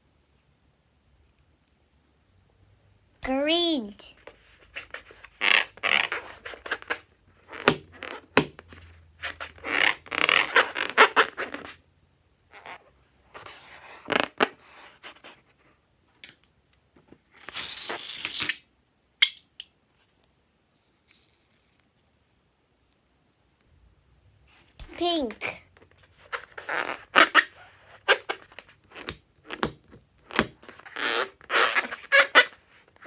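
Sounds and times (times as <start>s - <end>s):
rubber balloon squeaking: 5.3s - 8.5s, 9.2s - 11.8s, 14.0s - 14.5s, 26.2s - 29.7s, 30.3s - 32.6s.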